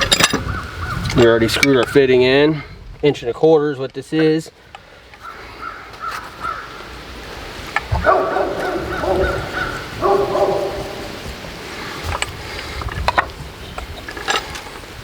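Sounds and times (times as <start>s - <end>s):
animal calling: 7.9s - 11.2s.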